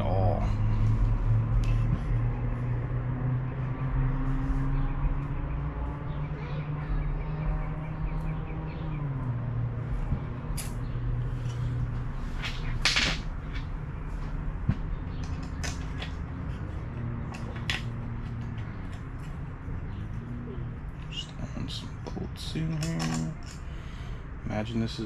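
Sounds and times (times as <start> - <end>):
hand tools clicking and knocking: 12.4 - 13.7, 15.2 - 16.3, 17.2 - 19.4, 22.0 - 23.6.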